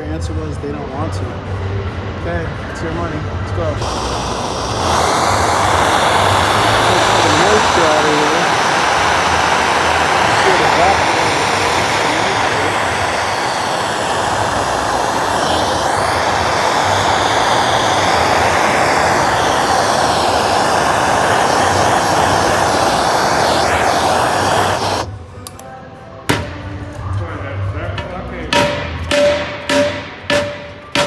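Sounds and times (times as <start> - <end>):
gas torch flame roaring: 3.6 - 25.6.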